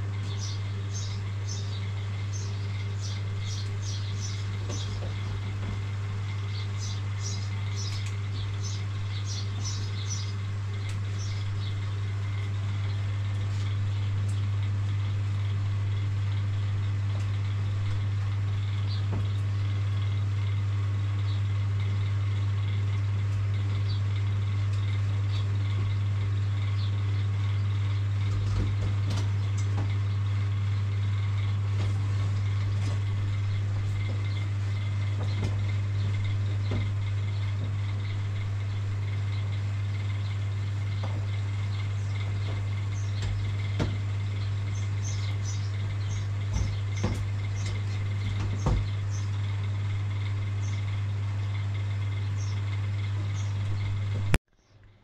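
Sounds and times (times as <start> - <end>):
low hum: 0.0 - 55.0.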